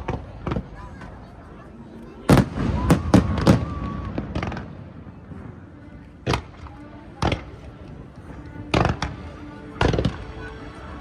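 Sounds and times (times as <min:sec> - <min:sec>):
fireworks bangs: 0:02.3 - 0:05.0.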